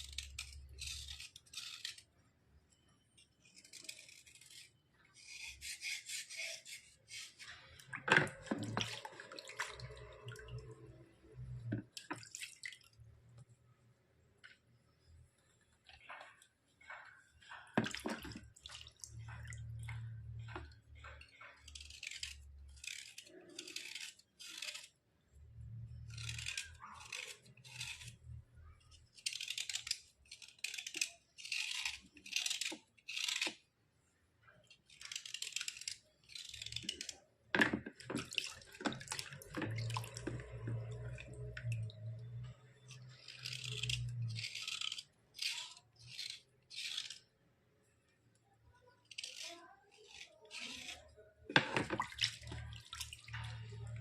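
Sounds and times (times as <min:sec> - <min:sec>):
slate pencil scraping: 0:00.0 - 0:02.2, 0:03.4 - 0:07.8, 0:20.0 - 0:25.0, 0:25.9 - 0:33.6, 0:42.9 - 0:47.3, 0:48.9 - 0:51.7.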